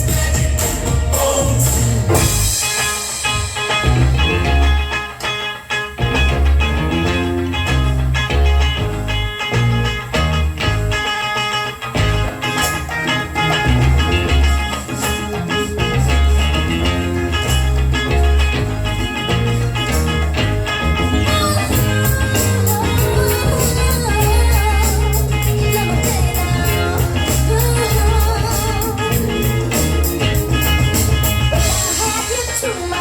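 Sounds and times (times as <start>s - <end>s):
person singing: 0.0s - 3.2s, 21.1s - 33.0s
drum beat: 0.0s - 5.0s, 21.4s - 33.0s
rock song over speakers: 0.0s - 33.0s.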